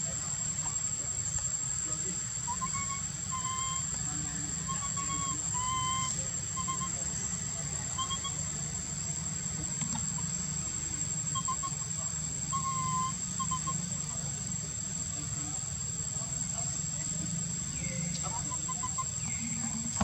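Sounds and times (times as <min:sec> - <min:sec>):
baby monkey squeaking calls: 0:02.4 - 0:04.0, 0:04.6 - 0:07.1, 0:07.9 - 0:08.6, 0:11.3 - 0:14.0, 0:18.2 - 0:19.6.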